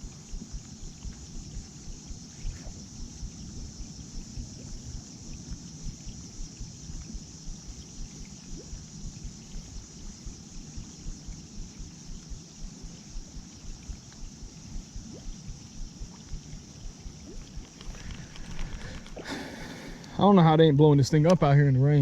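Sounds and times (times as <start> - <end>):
steady rain hiss: 0.0 - 22.0.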